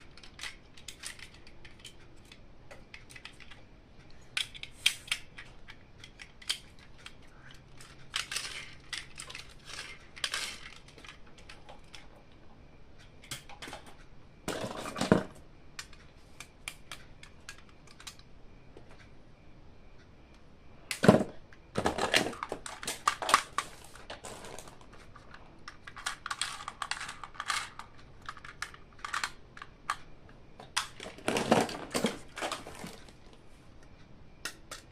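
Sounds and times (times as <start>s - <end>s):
plastic and cardboard crackling: 21.0s - 30.0s, 30.6s - 33.5s.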